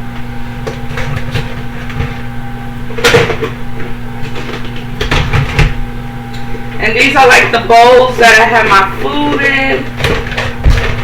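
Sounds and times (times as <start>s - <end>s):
steady low hum: 0.0s - 11.0s
kitchen items knocking and clunking: 4.3s - 5.8s, 9.0s - 11.0s.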